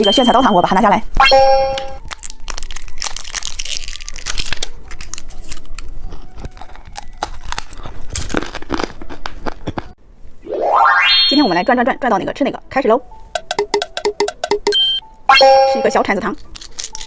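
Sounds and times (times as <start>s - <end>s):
plastic wrapper crinkling and tearing: 2.0s - 10.0s, 16.4s - 17.0s.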